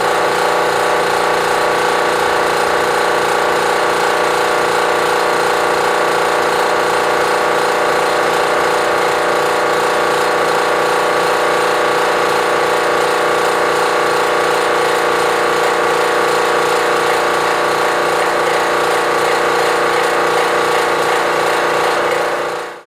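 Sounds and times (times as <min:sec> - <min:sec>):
air compressor drone: 0:00.0 - 0:22.8.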